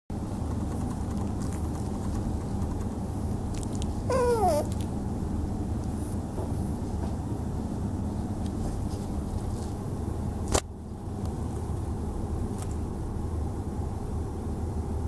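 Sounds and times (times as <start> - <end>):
kitten mewing: 3.6 - 4.8.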